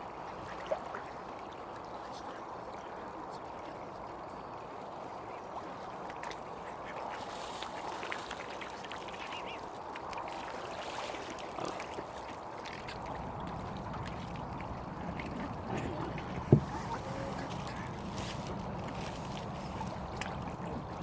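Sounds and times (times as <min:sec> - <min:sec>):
ducks quacking: 0:15.7 - 0:18.6.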